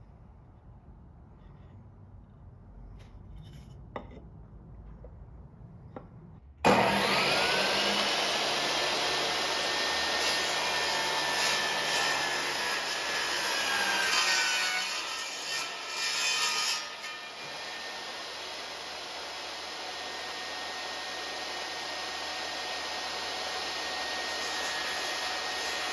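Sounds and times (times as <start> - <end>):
power tool cutting wood: 6.6 - 25.9.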